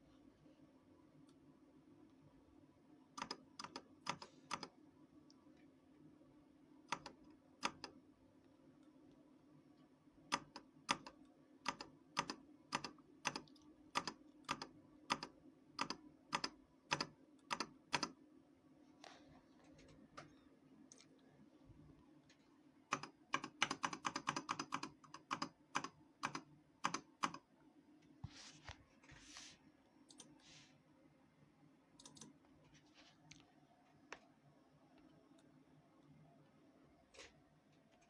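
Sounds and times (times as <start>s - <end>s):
faint low hum: 0.0s - 38.0s
mechanical keyboard keystrokes: 3.2s - 4.7s, 6.9s - 8.0s, 10.3s - 18.2s, 22.9s - 27.4s.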